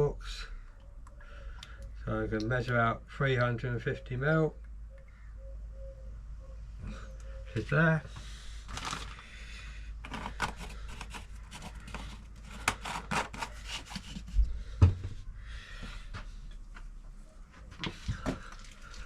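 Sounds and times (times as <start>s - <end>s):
plastic bottle and jug handling: 8.7s - 9.2s.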